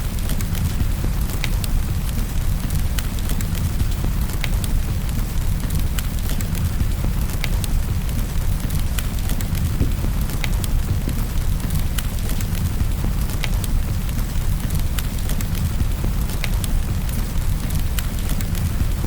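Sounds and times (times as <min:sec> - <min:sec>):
rain rumbling: 0:00.0 - 0:19.0
wood fire crackling and popping: 0:00.0 - 0:19.0.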